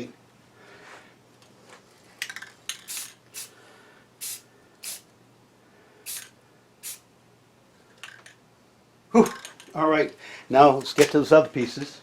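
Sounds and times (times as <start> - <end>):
spray paint can hissing: 2.8 - 3.5, 4.2 - 5.1, 6.1 - 7.0.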